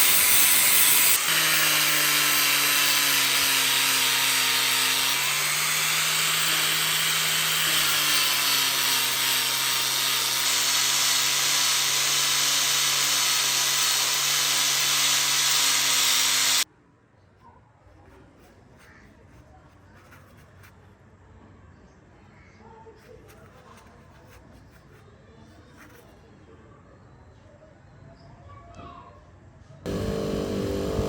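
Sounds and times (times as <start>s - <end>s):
electric grinder grinding metal: 0.0s - 16.6s, 29.9s - 31.0s.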